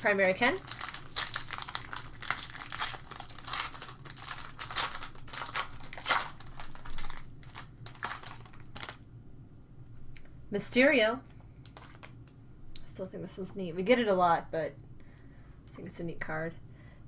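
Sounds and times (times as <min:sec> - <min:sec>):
wrapper tearing and crinkling: 0:00.0 - 0:09.0.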